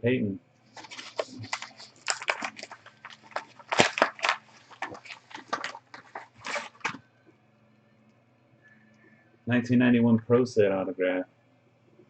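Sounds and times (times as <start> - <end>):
packaging rustling and crinkling: 0.7 - 7.0.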